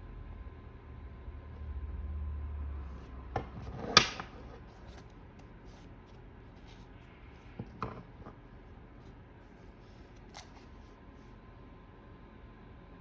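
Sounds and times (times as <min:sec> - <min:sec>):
sharp knock on table: 0:03.4 - 0:04.6.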